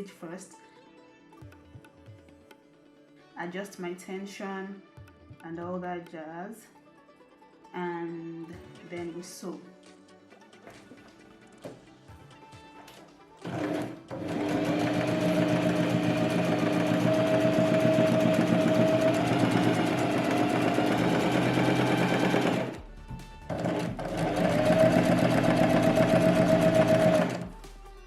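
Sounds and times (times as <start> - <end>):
sewing machine sewing: 13.4 - 22.8, 23.5 - 27.6.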